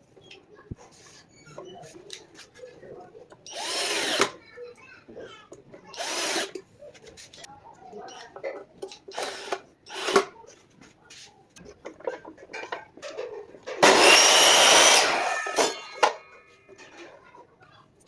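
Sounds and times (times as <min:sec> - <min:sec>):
miter saw cutting wood: 0:03.5 - 0:04.4, 0:13.8 - 0:15.8.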